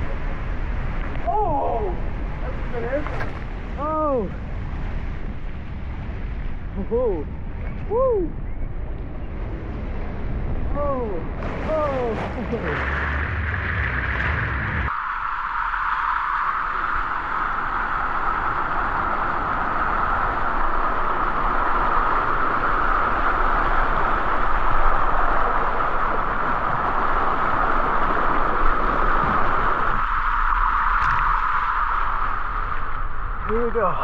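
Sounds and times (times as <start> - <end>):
water rushing down waterslide: 10.7 - 33.7.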